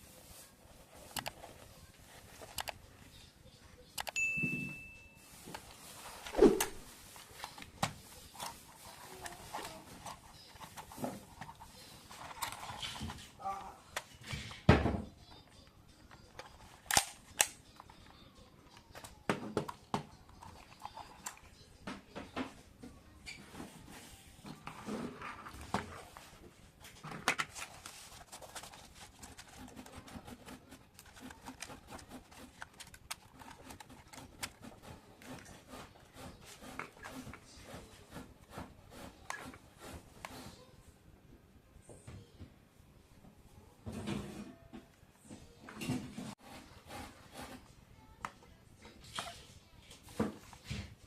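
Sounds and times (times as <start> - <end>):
plastic and cardboard rustling: 5.2 - 40.7.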